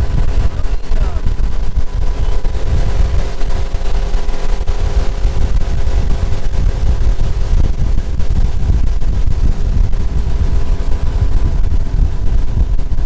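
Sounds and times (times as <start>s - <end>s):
outboard motor running: 0.0s - 13.0s
wind buffeting microphone: 0.0s - 13.0s.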